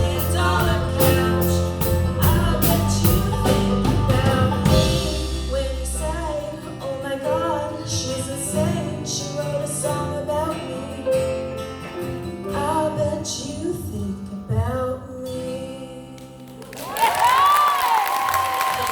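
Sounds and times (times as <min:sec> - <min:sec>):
live band music: 0:00.0 - 0:10.4
woman singing: 0:00.0 - 0:11.4, 0:12.5 - 0:18.9
guitar: 0:00.0 - 0:18.9.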